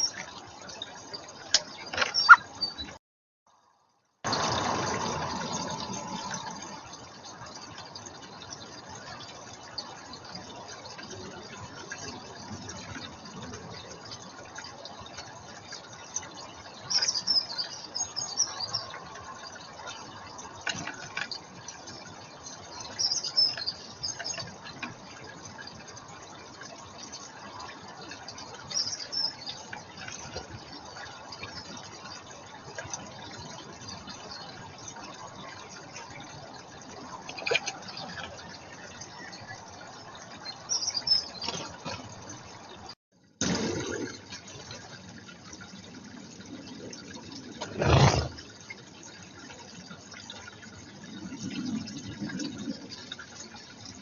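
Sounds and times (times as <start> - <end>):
birds chirping high-pitched: 1.7 - 3.0, 16.8 - 19.0, 28.6 - 30.2, 40.3 - 41.8.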